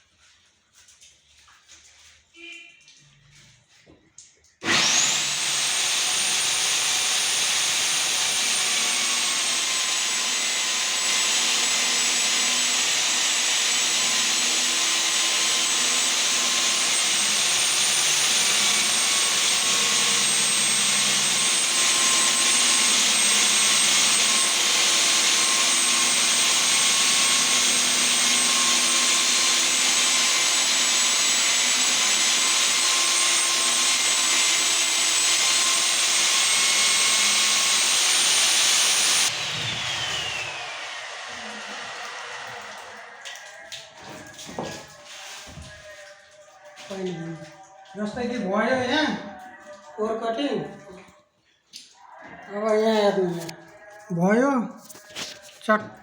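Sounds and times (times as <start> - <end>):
core drill motor whine: 4.6 - 43.2.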